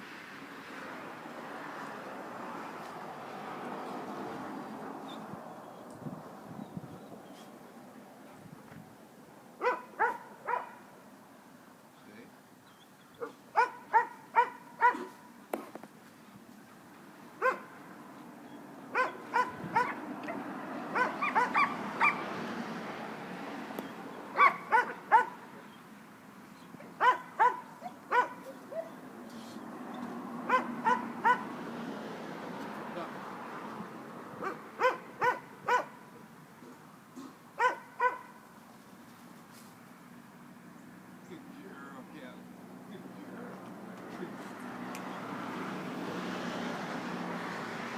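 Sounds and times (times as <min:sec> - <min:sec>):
dog barking: 0:09.6 - 0:10.8, 0:13.2 - 0:15.3, 0:17.4 - 0:17.7, 0:18.9 - 0:22.2, 0:24.4 - 0:25.4, 0:26.9 - 0:29.0, 0:30.5 - 0:31.5, 0:34.4 - 0:36.1, 0:37.6 - 0:38.4.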